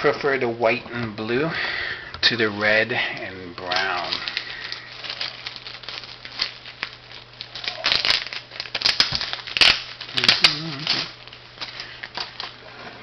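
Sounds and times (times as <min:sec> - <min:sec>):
low steady hum: 0:00.0 - 0:13.0
plastic bag crinkling: 0:02.5 - 0:12.8.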